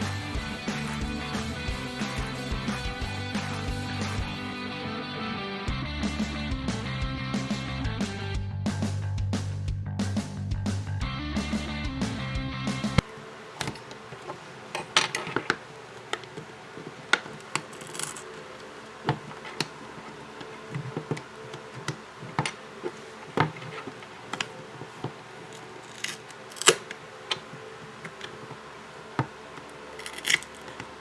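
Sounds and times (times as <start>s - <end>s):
pry tool clicks and crackles: 25.5s - 27.4s, 30.0s - 30.9s.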